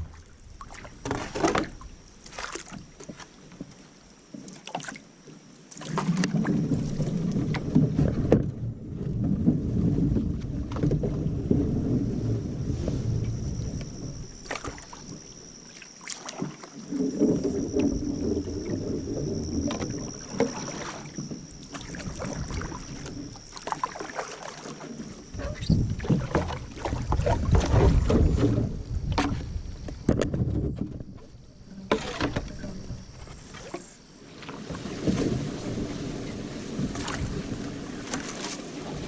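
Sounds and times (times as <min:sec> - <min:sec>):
paddle splashing in water: 0:00.0 - 0:39.0
wind on microphone: 0:06.2 - 0:14.6, 0:25.2 - 0:33.7, 0:34.6 - 0:39.0
sharp knocks on canoe: 0:25.5 - 0:31.3.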